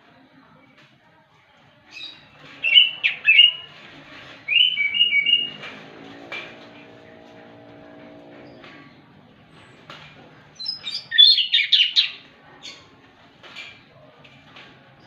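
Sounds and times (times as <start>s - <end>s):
thrush singing whistled phrases: 1.9s - 3.7s, 4.4s - 5.7s
faint low drone: 5.6s - 10.6s.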